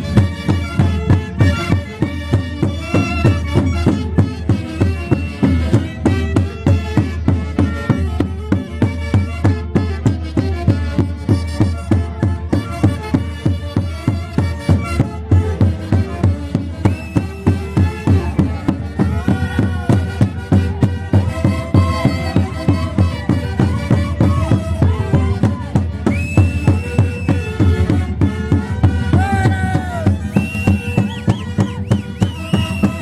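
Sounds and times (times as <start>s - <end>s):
wind instruments playing a melody: 0.0s - 33.0s
fast drum beat: 16.8s - 33.0s.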